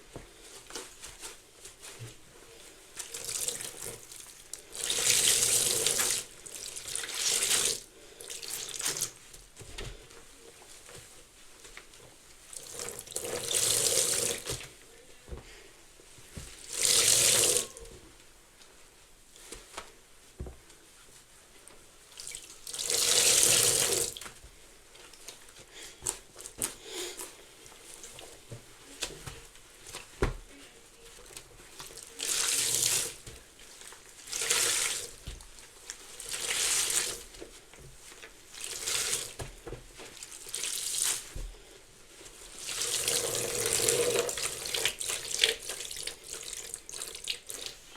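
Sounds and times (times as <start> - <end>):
soapy sponge squeezing: 3.0 - 9.2, 12.5 - 14.7, 16.4 - 17.8, 22.1 - 24.3, 31.2 - 41.6, 42.2 - 47.9.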